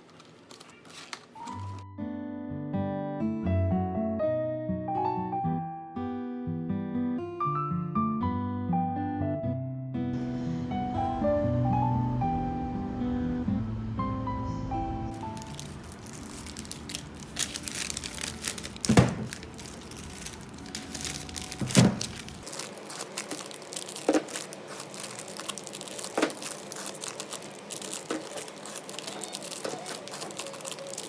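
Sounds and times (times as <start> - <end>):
packaging crinkling and rustling: 0.0 - 1.8, 15.0 - 31.0.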